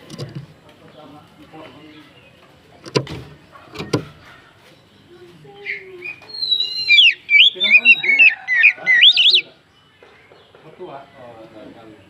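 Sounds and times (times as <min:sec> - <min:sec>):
bird singing whistled phrases: 0:05.6 - 0:09.5.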